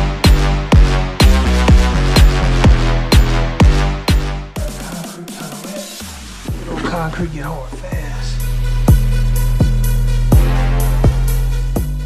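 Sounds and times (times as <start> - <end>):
bass line: 0.0 - 4.9, 6.0 - 12.0
deep kick drums: 0.2 - 4.8, 6.5 - 12.0.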